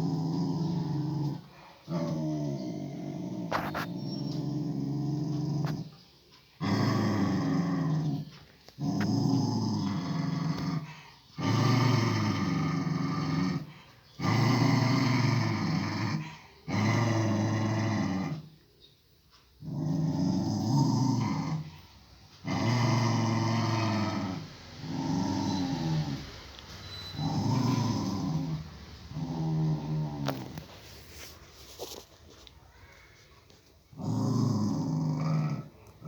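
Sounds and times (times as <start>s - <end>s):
dog growling: 0.0s - 6.0s, 6.6s - 18.6s, 19.6s - 26.4s, 27.1s - 31.9s, 33.9s - 36.0s
dog breathing: 10.8s - 11.4s.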